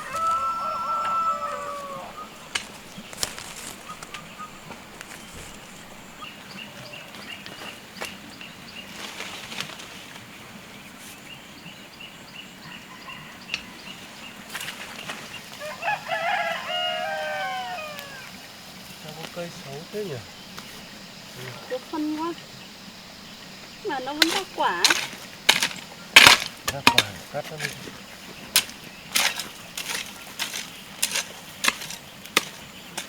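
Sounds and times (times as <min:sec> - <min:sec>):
rooster crowing: 0:00.0 - 0:02.5, 0:12.6 - 0:14.0, 0:15.6 - 0:18.4
sharp knocks and rustles: 0:02.4 - 0:06.0, 0:24.2 - 0:33.0.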